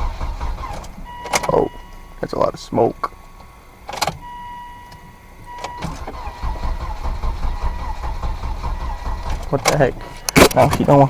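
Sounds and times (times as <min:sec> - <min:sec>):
engine cranking on starter: 0:00.0 - 0:01.6, 0:05.5 - 0:10.9
steady electronic beep: 0:01.0 - 0:02.1, 0:04.2 - 0:06.0.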